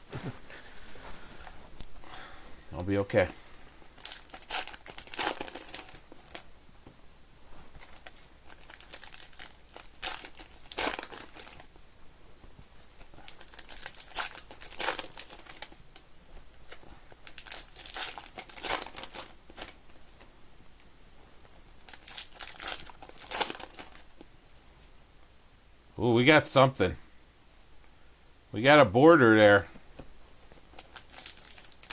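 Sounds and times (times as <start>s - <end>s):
wrappers tearing and crinkling: 3.7s - 6.5s, 7.8s - 11.7s, 13.0s - 16.0s, 16.7s - 19.9s, 21.6s - 24.1s, 30.5s - 31.9s.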